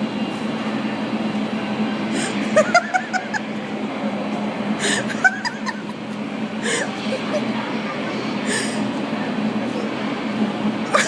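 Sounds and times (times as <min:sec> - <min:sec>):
blower wind rushing: 0:00.0 - 0:10.9
giggling laughter: 0:02.3 - 0:03.5, 0:04.8 - 0:07.6.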